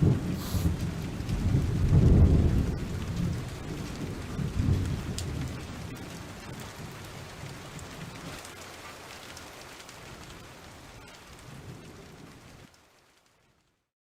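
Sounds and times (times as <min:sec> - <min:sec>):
rolling thunder: 0:00.0 - 0:08.3
rain hissing: 0:00.0 - 0:13.6.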